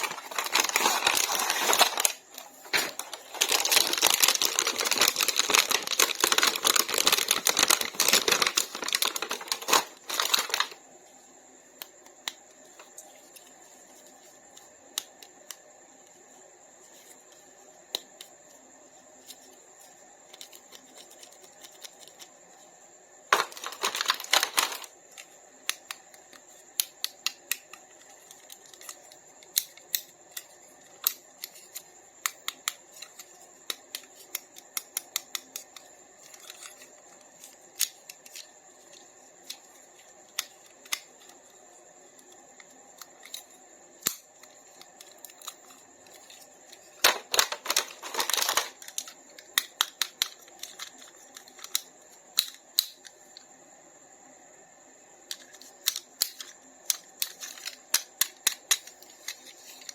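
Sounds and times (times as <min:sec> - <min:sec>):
packaging crinkling and rustling: 0:00.0 - 0:10.8, 0:23.3 - 0:24.9, 0:44.8 - 0:49.2.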